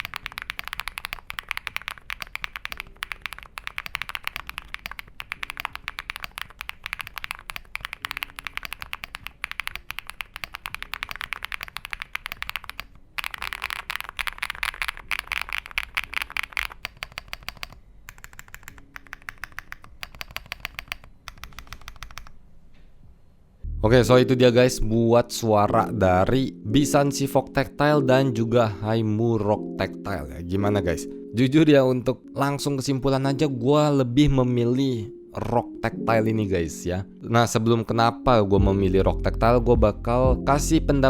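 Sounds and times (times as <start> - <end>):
mechanical keyboard typing: 0.0 - 22.4.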